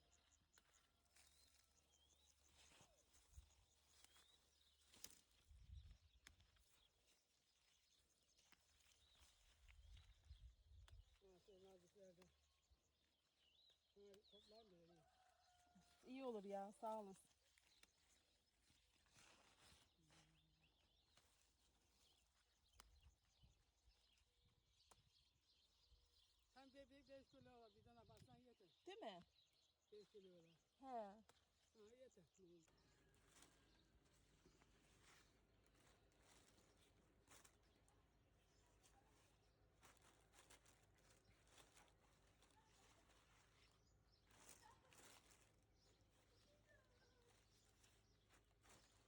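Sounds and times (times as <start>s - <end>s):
faint bird chirps: 17.2s - 49.0s.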